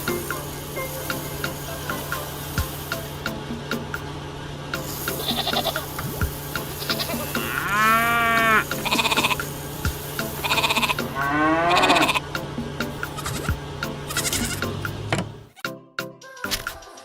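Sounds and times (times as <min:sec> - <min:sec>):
steady low hum: 0:00.0 - 0:15.6
farm animal bleating: 0:05.1 - 0:05.9, 0:06.7 - 0:09.5, 0:10.4 - 0:12.3, 0:13.0 - 0:14.8.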